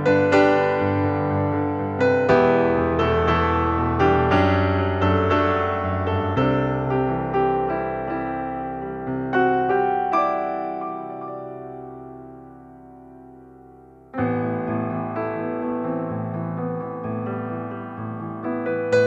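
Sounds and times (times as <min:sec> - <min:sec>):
slow gentle piano music: 0:00.0 - 0:19.0.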